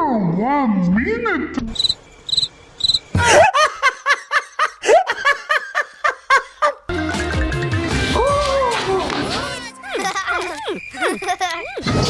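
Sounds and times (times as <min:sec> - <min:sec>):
cricket chirps: 0:01.6 - 0:03.2, 0:09.6 - 0:12.0
pulsing laugh sound effect: 0:09.2 - 0:12.0.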